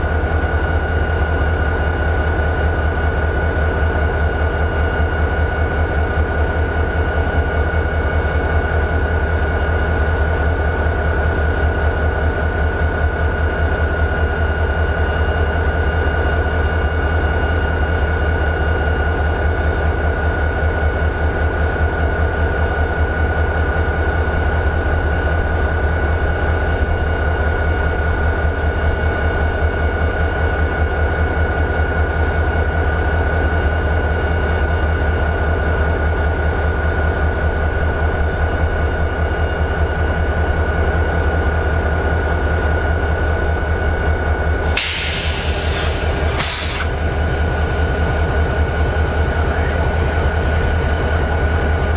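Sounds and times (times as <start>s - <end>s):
diesel locomotive engine idling: 0.0s - 51.9s
high whine: 44.6s - 51.9s
sharp hiss: 44.7s - 47.0s.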